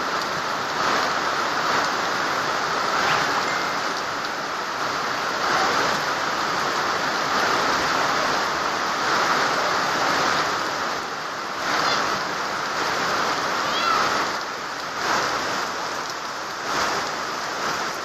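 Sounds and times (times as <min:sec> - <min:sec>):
rushing water: 0:00.0 - 0:18.0.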